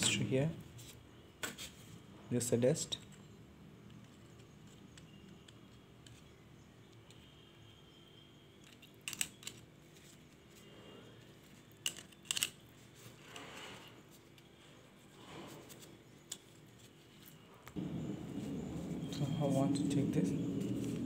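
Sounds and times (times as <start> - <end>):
clicks handling small laptop parts: 8.6 - 9.7, 11.7 - 12.6.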